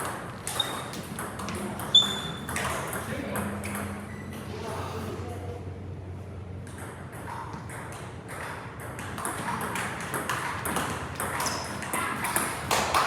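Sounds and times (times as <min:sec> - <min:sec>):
table tennis balls clicking: 0:00.0 - 0:04.0, 0:06.7 - 0:13.0.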